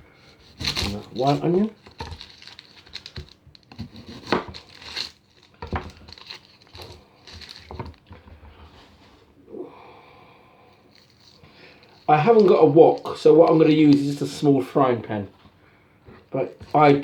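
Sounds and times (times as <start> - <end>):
onion skins crinkling: 0.4 - 8.2, 10.9 - 14.4.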